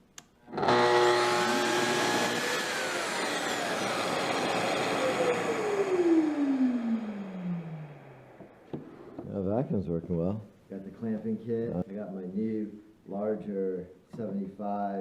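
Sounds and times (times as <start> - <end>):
circular saw motor whining: 0.5 - 8.7
dust extractor airflow: 0.6 - 9.0.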